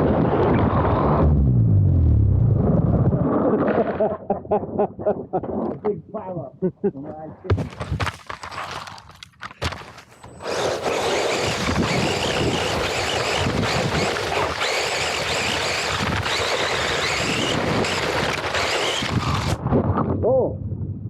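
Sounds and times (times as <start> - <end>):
rush of wind and dirt: 0.0 - 1.2, 10.3 - 21.0.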